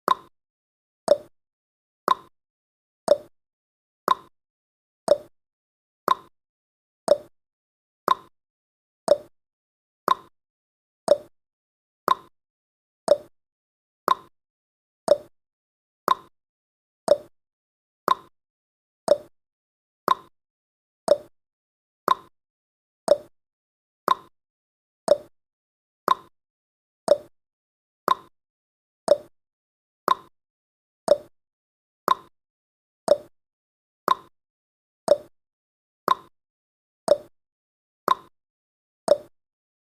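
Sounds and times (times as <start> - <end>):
timer ticking tick-tock: 0.1 - 0.3, 1.1 - 1.3, 2.1 - 2.3, 3.1 - 3.3, 4.1 - 4.3, 5.1 - 5.3, 6.1 - 6.3, 7.1 - 7.3, 8.1 - 8.3, 9.1 - 9.3, 10.1 - 10.3, 11.1 - 11.3, 12.1 - 12.3, 13.1 - 13.3, 14.1 - 14.3, 15.1 - 15.3, 16.1 - 16.3, 17.1 - 17.3, 18.1 - 18.3, 19.1 - 19.3, 20.1 - 20.3, 21.1 - 21.3, 22.1 - 22.3, 23.1 - 23.3, 24.1 - 24.3, 25.1 - 25.3, 26.1 - 26.3, 27.1 - 27.3, 28.1 - 28.3, 29.1 - 29.3, 30.1 - 30.3, 31.1 - 31.3, 32.1 - 32.3, 33.1 - 33.3, 34.1 - 34.3, 35.1 - 35.3, 36.1 - 36.3, 37.1 - 37.3, 38.1 - 38.3, 39.1 - 39.3.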